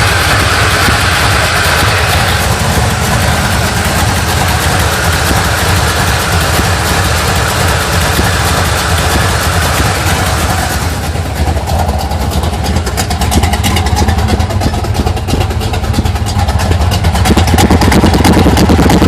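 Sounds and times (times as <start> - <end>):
engine idling rough: 0.0 - 19.0.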